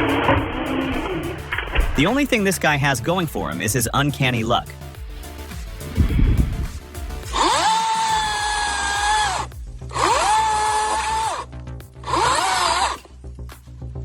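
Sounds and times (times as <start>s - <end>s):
background music: 0.0s - 14.0s
low rumble: 5.8s - 7.5s
power tool motor spinning: 7.2s - 13.1s.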